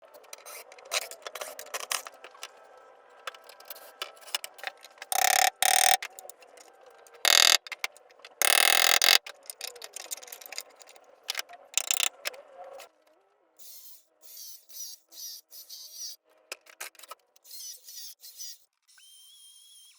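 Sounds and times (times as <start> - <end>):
clicks and knocks of wood and hardware: 3.3 - 6.4, 7.3 - 12.2.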